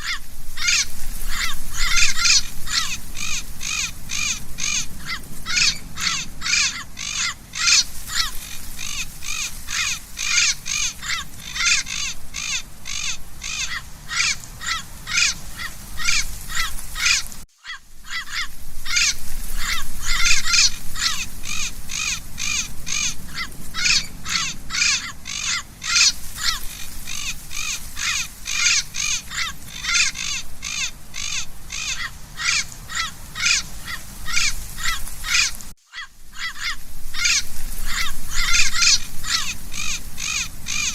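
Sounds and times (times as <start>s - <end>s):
parrot squawking harshly: 0.0s - 40.9s.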